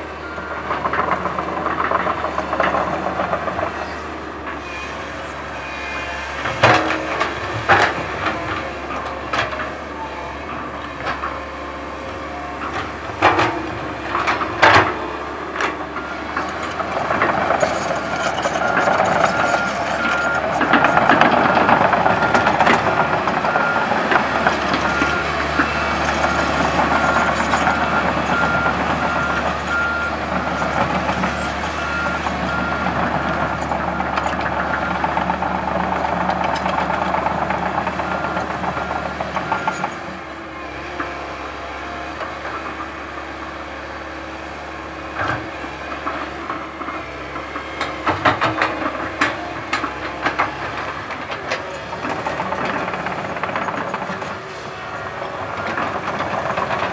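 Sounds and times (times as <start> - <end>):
excavator engine running: 0.0 - 56.9
sharp clicks and knocks: 33.3 - 40.0.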